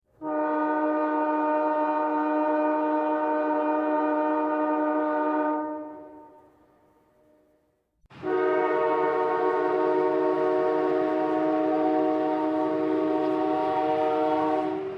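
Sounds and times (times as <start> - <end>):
train horn blast: 0.1 - 14.9.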